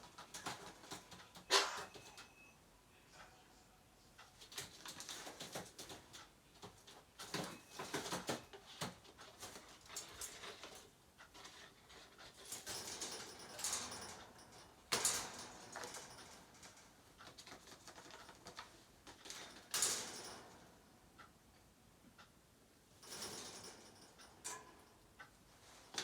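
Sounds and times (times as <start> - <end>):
magpie tapping and rustling: 17.2 - 19.7.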